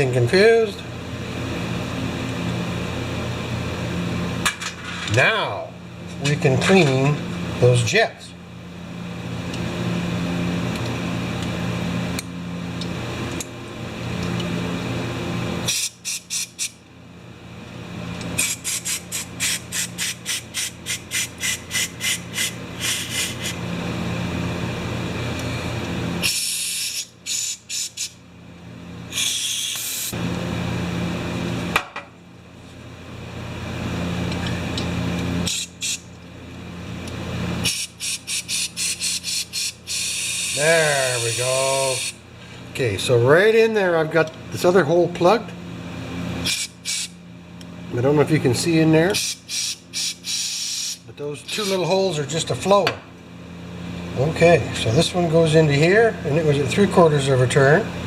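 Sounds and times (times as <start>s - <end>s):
tool hissing with low hum: 0.0s - 58.0s.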